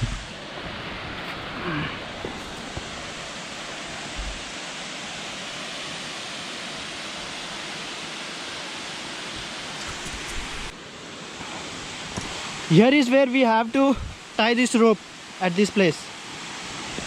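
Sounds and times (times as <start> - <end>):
low thump: 0.0 - 0.3, 4.1 - 4.5
waterfall roaring: 0.0 - 17.0.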